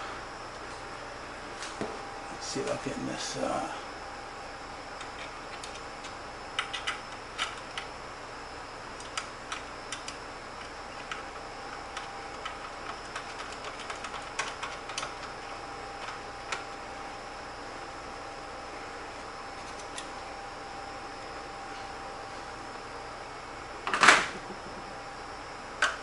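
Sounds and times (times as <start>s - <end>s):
steady faint hum: 0.0s - 26.0s
hands clicking on computer parts: 5.0s - 7.9s, 9.0s - 11.2s, 12.0s - 15.3s.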